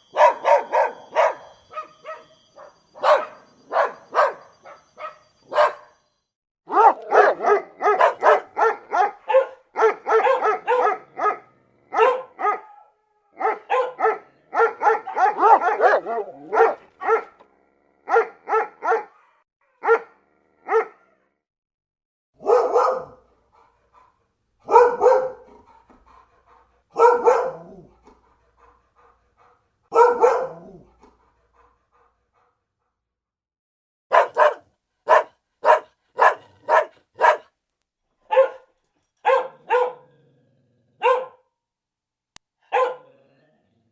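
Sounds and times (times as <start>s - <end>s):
dog barking: 0.0s - 6.0s, 6.7s - 17.4s, 18.0s - 21.2s, 22.4s - 25.8s, 26.9s - 28.0s, 29.9s - 30.9s, 34.1s - 37.5s, 38.2s - 40.2s, 41.0s - 41.5s, 42.6s - 43.2s.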